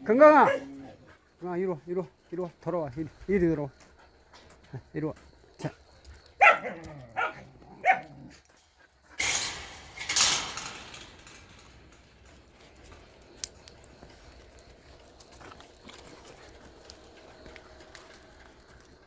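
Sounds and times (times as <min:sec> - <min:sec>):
dog barking: 0:00.3 - 0:00.8, 0:06.4 - 0:08.2
rustling and scuffling: 0:08.5 - 0:19.0.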